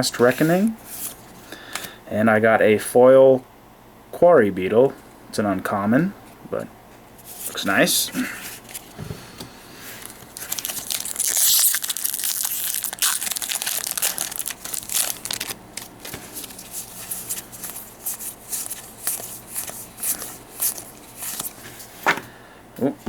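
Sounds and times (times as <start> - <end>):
cards rustling and clicking: 8.5 - 9.0, 9.9 - 22.3
foil wrapper tearing and crinkling: 10.0 - 21.6.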